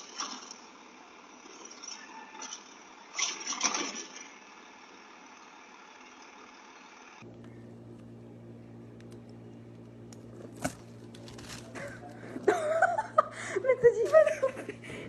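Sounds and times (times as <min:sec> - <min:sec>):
low hum: 0:07.2 - 0:15.0.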